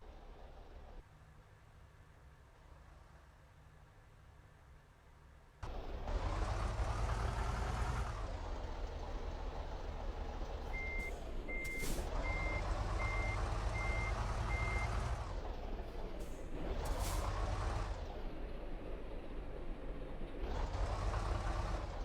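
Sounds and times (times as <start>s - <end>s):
heavy vehicles passing: 5.7s - 22.0s.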